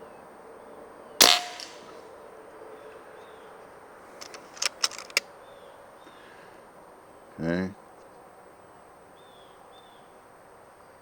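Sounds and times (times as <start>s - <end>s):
metallic clicks of rifle action: 1.2s - 1.9s, 4.2s - 5.2s
pellet rifle shot: 1.2s - 2.0s.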